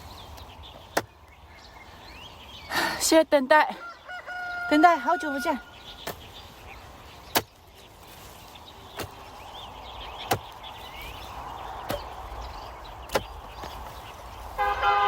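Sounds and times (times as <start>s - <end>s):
birds chirping faintly: 0.0s - 15.0s
hand tool chopping: 7.2s - 7.6s, 8.9s - 9.4s, 10.1s - 11.2s, 11.8s - 12.4s, 13.0s - 14.0s.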